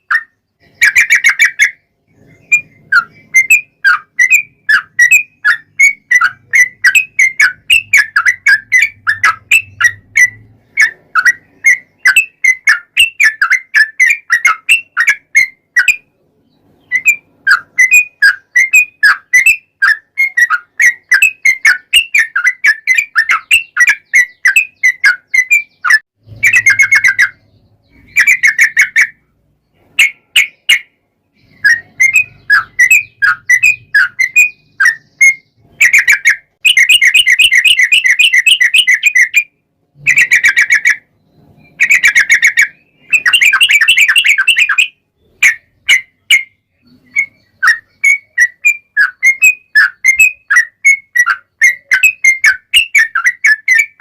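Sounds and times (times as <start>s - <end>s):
bulbul chirping: 0.0s - 54.0s
bird rippling trills: 31.5s - 54.0s.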